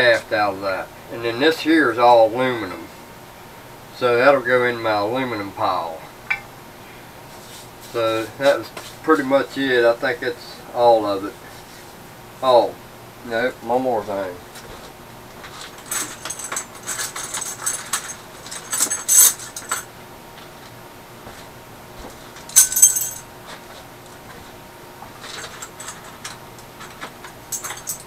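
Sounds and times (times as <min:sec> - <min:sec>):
small metal parts clinking: 0:15.5 - 0:19.9, 0:22.5 - 0:23.2, 0:25.2 - 0:28.0.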